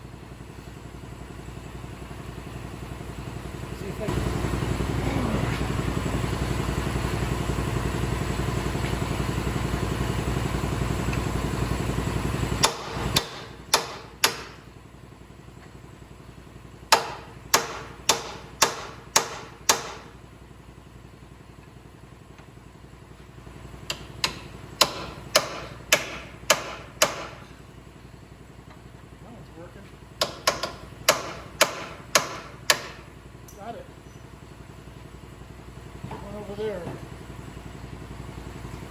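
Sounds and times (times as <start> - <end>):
hammer striking metal: 12.6 - 14.6, 16.9 - 20.1, 24.2 - 27.5, 30.2 - 33.6.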